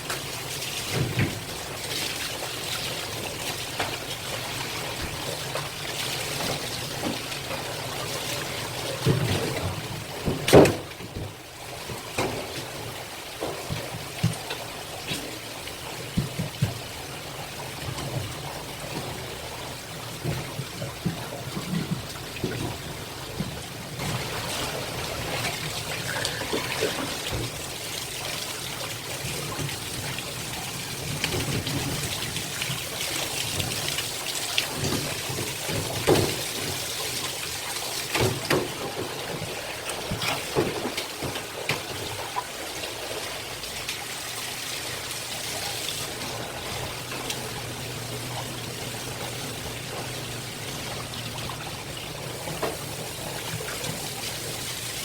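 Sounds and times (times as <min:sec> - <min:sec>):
water pouring: 0:14.0 - 0:55.0.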